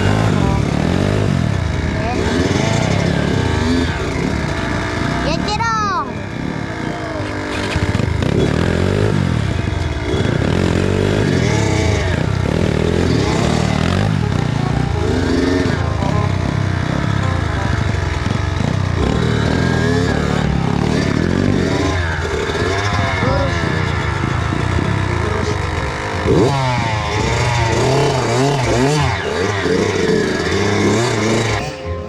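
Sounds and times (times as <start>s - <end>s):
dirt bike engine revving: 0.0s - 32.0s.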